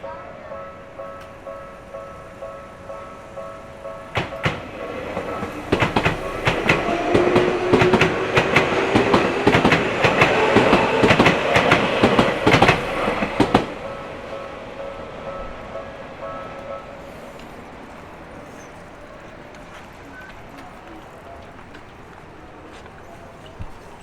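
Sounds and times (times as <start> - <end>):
train wheels clacking over rail joints: 4.1 - 14.0, 15.5 - 24.0.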